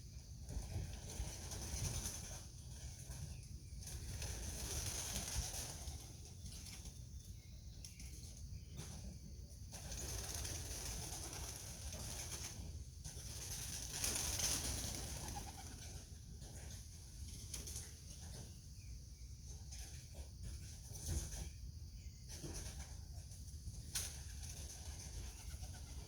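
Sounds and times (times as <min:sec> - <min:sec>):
pigeons cooing: 0:15.0 - 0:16.5, 0:24.6 - 0:26.0.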